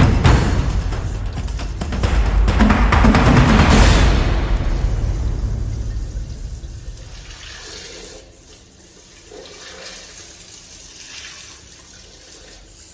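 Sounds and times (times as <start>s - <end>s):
low boom: 0.0s - 7.6s
toilet water rushing: 4.6s - 12.9s.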